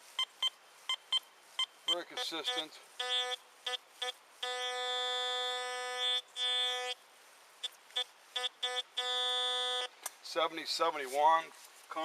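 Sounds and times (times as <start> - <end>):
metal detector tone: 0.2 - 7.0.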